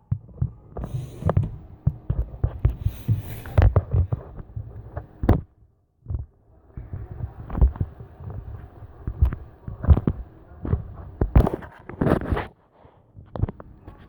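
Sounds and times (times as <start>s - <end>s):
soft thumps and knocks: 0.0s - 12.4s
rustling near microphone: 0.2s - 5.4s.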